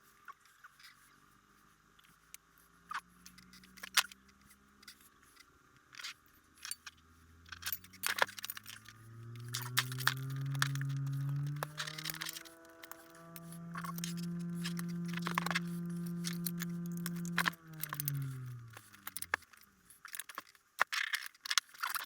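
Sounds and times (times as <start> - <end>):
low hum rising in pitch: 7.0 - 19.8
hands handling guitar pedals: 7.6 - 22.0.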